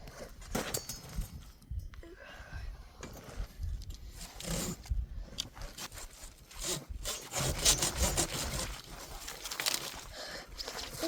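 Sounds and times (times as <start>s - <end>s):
saw rasping through dry branches: 4.0s - 5.0s, 5.7s - 11.0s.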